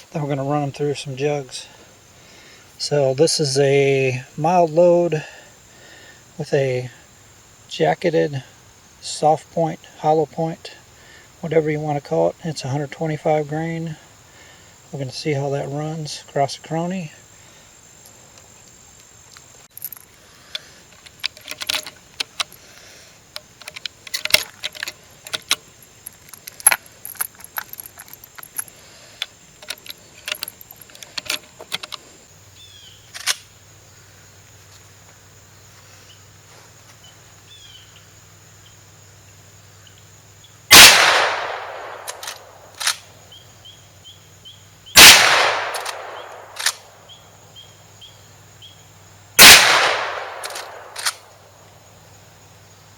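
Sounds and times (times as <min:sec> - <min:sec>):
light clicks and knocks: 0:19.7 - 0:22.6, 0:23.3 - 0:32.0
rifle shots with echo: 0:40.7 - 0:42.7, 0:45.0 - 0:47.0, 0:49.4 - 0:51.3.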